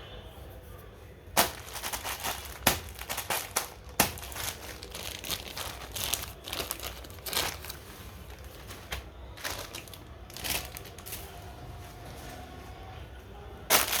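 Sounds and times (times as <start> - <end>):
plastic packaging crinkling: 1.4 - 12.5, 13.7 - 14.0.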